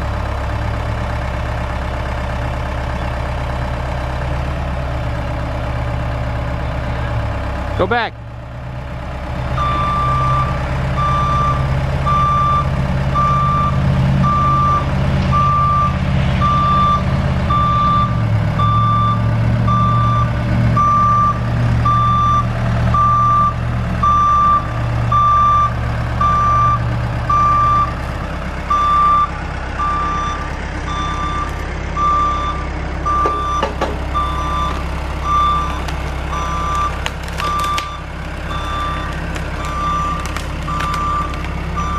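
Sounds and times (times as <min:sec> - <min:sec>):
heavy vehicle engine: 0:00.0 - 0:41.9
reversing alarm beeping: 0:09.6 - 0:28.0, 0:28.7 - 0:41.9.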